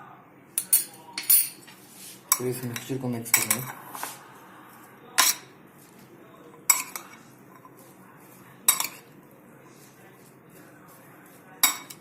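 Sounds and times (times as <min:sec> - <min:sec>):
spoon clinking against bowl: 0:00.6 - 0:03.8, 0:05.2 - 0:05.5, 0:06.6 - 0:07.8, 0:08.6 - 0:09.2, 0:11.2 - 0:12.0.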